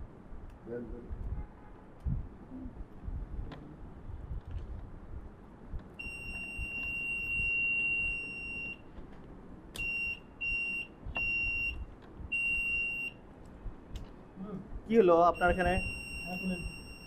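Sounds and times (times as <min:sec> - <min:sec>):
fire alarm hooter tone: 0:06.0 - 0:08.8, 0:09.8 - 0:13.2, 0:15.3 - 0:17.0.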